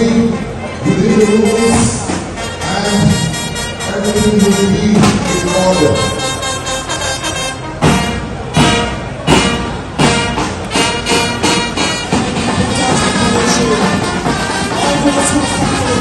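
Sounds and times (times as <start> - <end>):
brass music with strong beats: 0.0 - 16.0.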